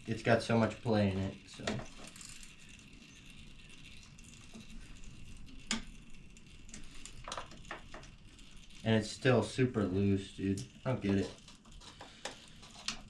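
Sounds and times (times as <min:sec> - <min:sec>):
faint metal tool sounds: 0:06.4 - 0:13.0.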